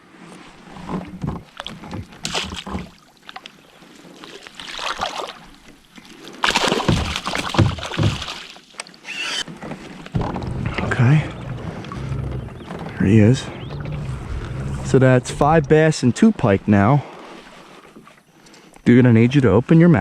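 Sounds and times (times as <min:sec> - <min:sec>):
water sloshing and splashing: 0:00.1 - 0:18.8
knocks and rustles: 0:06.8 - 0:08.5, 0:09.5 - 0:15.6.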